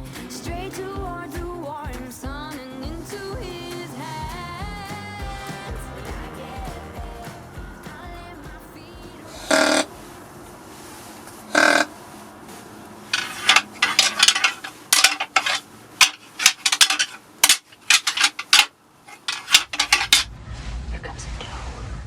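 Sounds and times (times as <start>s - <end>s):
antlers rattling and clacking: 13.2s - 20.3s.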